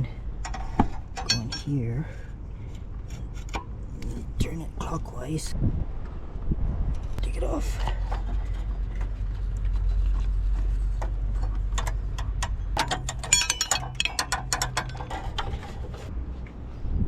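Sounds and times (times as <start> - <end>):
steady low hum: 0.0 - 17.0
ringing metal sound: 1.2 - 1.8, 12.5 - 15.4.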